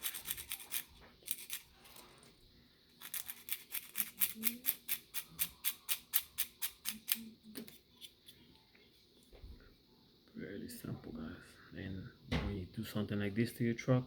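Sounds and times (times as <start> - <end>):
hand sanding plastic part: 0.0 - 1.7.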